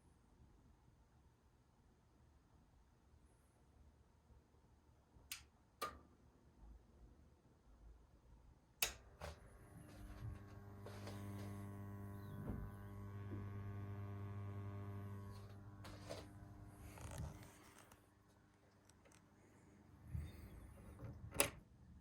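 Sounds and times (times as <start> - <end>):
low mains hum: 7.6 - 22.0.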